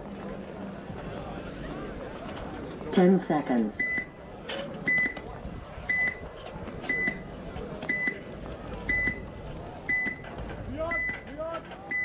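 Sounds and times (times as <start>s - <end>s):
countdown timer beeps: 3.8s - 4.2s, 8.9s - 9.2s.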